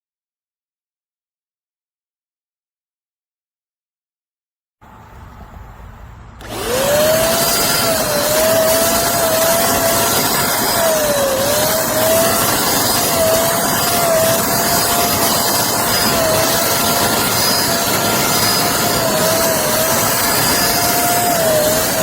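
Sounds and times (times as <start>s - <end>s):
power tool motor whining: 6.4s - 22.0s.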